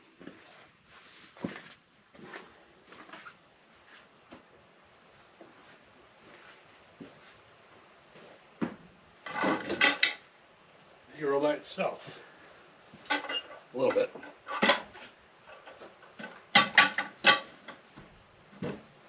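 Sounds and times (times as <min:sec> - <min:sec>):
crickets chirping: 0:00.0 - 0:19.0.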